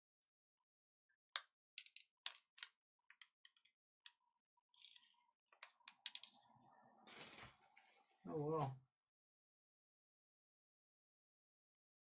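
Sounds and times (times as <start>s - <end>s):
clicks and taps of tools: 1.4s - 4.2s.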